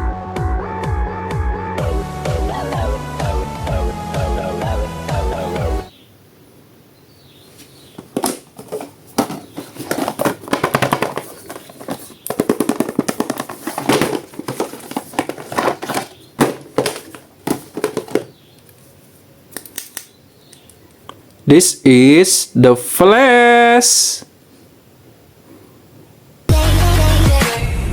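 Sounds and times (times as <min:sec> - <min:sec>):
plastic packaging crackling: 0:08.0 - 0:18.4.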